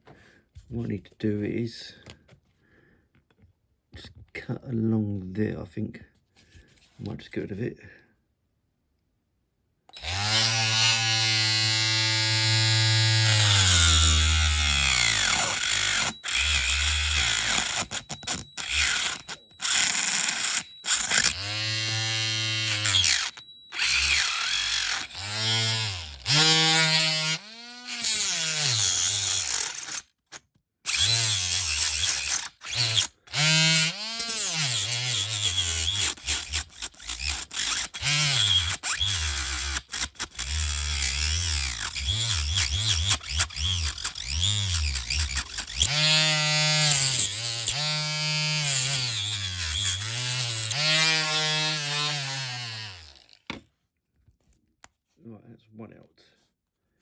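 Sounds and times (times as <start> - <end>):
rotary tool cutting metal: 9.9 - 30.1, 30.9 - 53.5
rotary tool motor whine: 10.0 - 30.0, 30.9 - 53.4.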